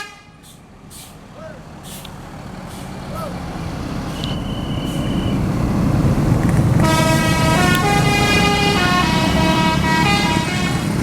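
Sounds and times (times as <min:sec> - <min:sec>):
bus engine running: 0:00.0 - 0:11.0
multi-tone musical horn: 0:06.8 - 0:10.9.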